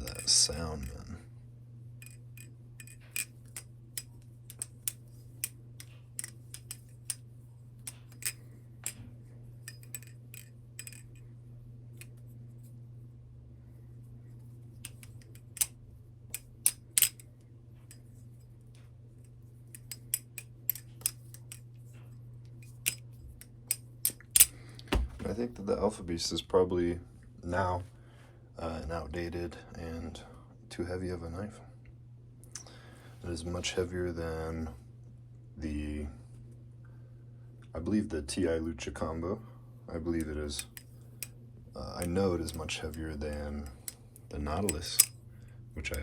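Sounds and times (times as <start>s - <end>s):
butterfly knife clicking: 16.3s - 17.2s.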